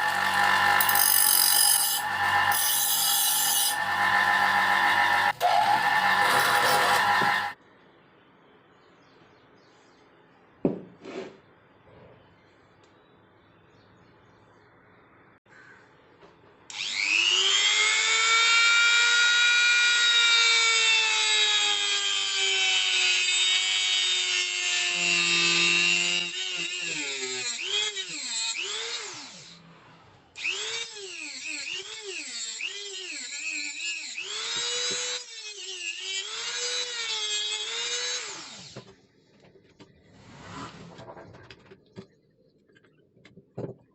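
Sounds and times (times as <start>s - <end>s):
power tool grinding steel: 0.0s - 7.6s.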